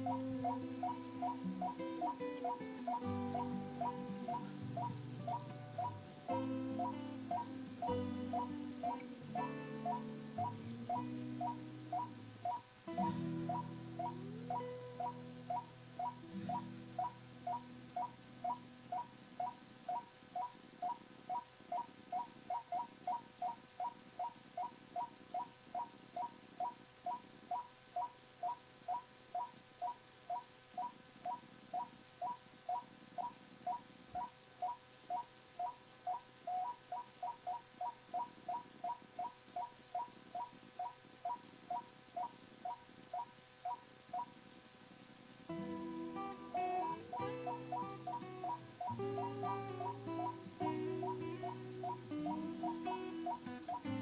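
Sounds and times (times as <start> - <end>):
faint hum: 0.0 - 54.0
tape hiss: 0.0 - 54.0
bird calling short notes: 45.6 - 54.0.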